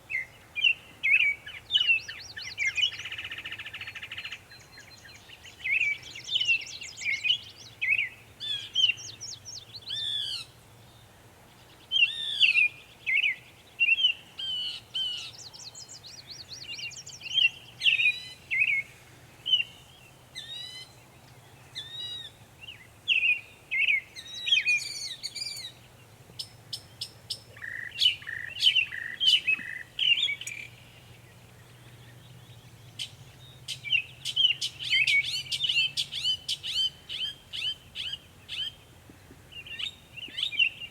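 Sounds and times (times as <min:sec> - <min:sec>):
mockingbird singing: 0:26.4 - 0:38.8.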